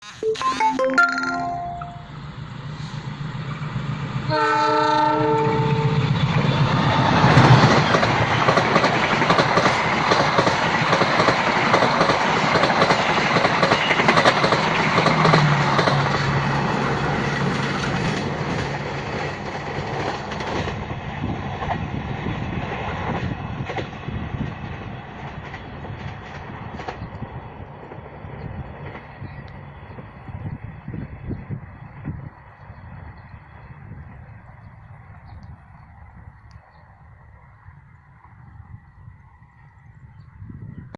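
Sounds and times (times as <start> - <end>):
train wheels clattering over rails: 5.6 - 22.0, 22.6 - 29.2.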